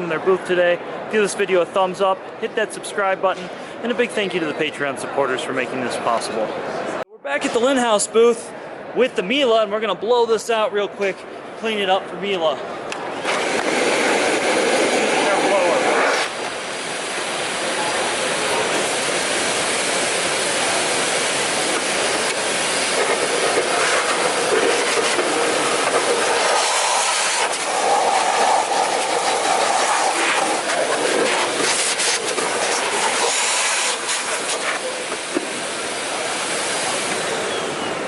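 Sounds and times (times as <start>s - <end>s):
air jet rushing hiss: 13.1s - 37.8s.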